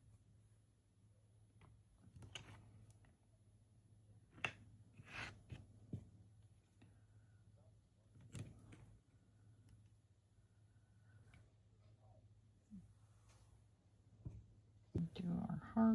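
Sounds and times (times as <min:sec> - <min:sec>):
low steady hum: 0:00.0 - 0:15.9.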